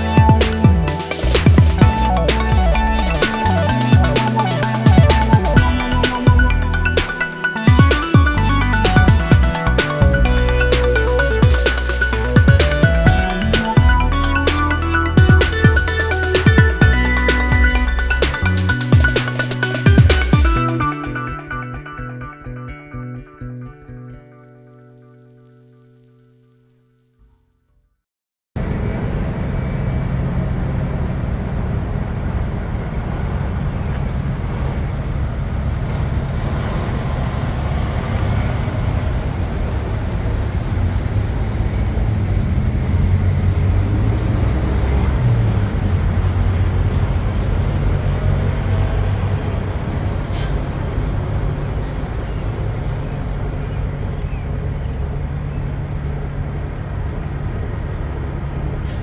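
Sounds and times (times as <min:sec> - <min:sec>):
diesel truck engine rumbling: 0:28.6 - 0:59.0.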